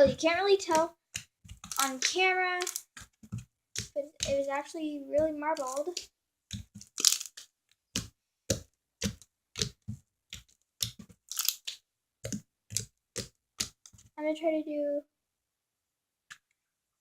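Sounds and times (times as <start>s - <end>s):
slime squished by hand: 0.0s - 4.5s, 5.2s - 14.0s.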